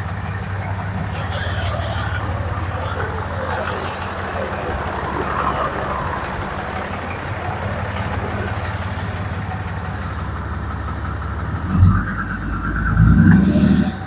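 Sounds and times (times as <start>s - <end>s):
engine idling: 0.0s - 14.0s.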